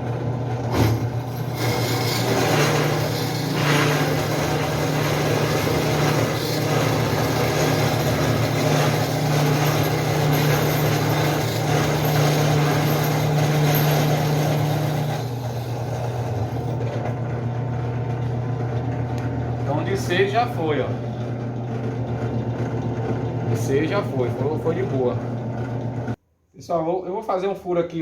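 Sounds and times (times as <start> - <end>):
drill press motor hum: 0.0 - 26.2
drill bit grinding into steel: 0.6 - 17.2.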